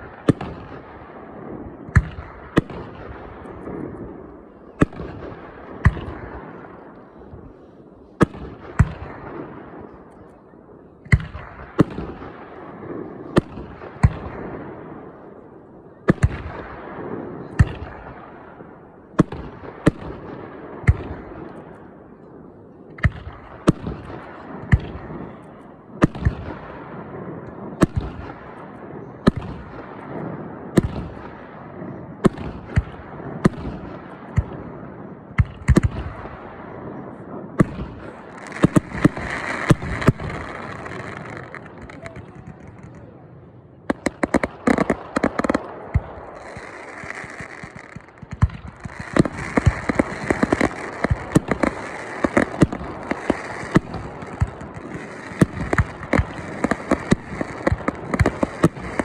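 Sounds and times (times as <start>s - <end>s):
firework bangs with rumbling echo: 0.0s - 7.6s, 8.2s - 10.2s, 11.0s - 22.2s, 23.0s - 43.2s, 43.8s - 59.0s
hissing firework crackle: 37.9s - 43.0s, 43.9s - 59.0s.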